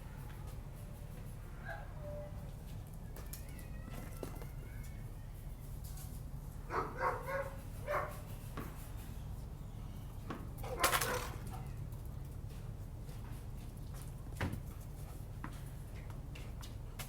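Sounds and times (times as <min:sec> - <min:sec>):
dog barking: 0:06.7 - 0:08.2, 0:10.6 - 0:11.4.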